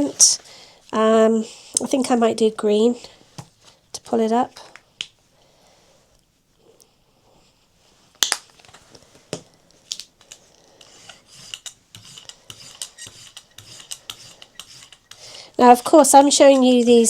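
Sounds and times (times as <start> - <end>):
rubber roller rolling paint: 10.7 - 17.0.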